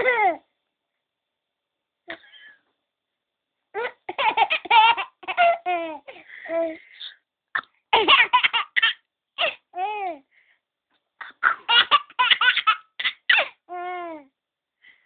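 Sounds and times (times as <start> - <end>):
baby laughing and squealing: 3.8 - 7.1, 8.0 - 10.1, 11.5 - 14.1.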